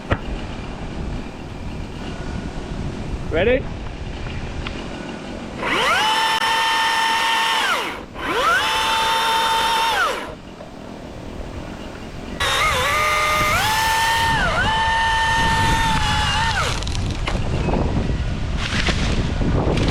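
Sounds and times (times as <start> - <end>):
chainsaw whining: 5.6 - 10.4, 12.4 - 17.0.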